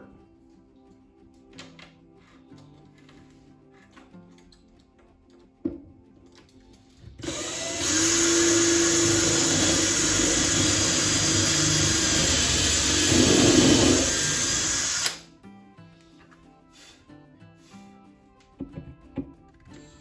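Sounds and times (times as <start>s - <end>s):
power drill drilling: 7.2s - 15.2s.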